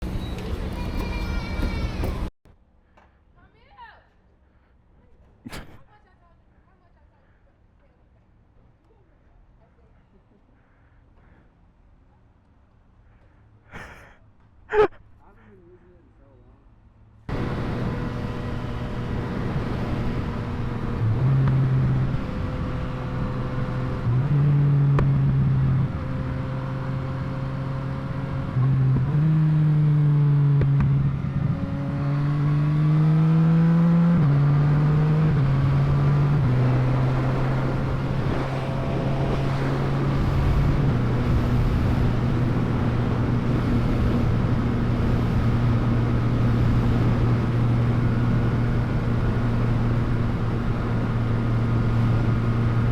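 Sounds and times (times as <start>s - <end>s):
motorcycle engine revving: 17.3s - 52.9s
rushing noise: 34.8s - 44.8s.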